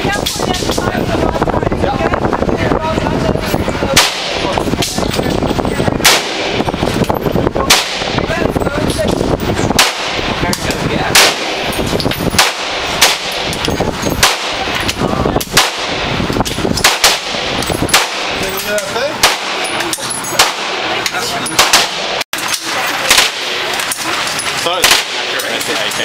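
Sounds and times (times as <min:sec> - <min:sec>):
shooting range background noise: 0:02.6 - 0:26.0
gunshots: 0:03.9 - 0:05.1, 0:05.9 - 0:08.5, 0:09.7 - 0:25.7.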